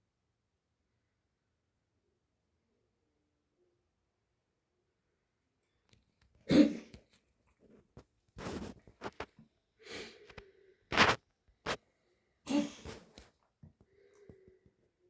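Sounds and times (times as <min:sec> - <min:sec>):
pet coughing harshly: 0:06.4 - 0:07.0, 0:12.5 - 0:13.1.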